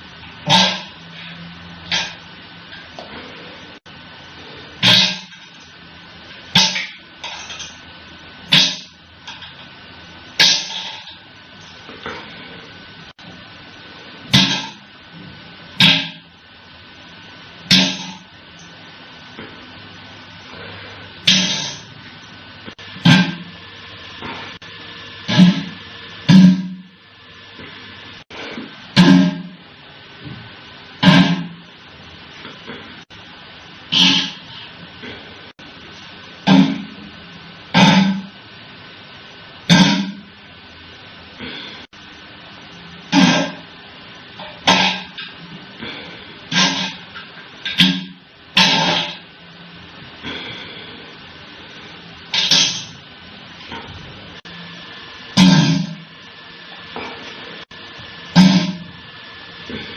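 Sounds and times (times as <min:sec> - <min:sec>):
person burping loudly: 0:33.9 - 0:34.4, 0:39.7 - 0:40.2, 0:55.4 - 0:56.1.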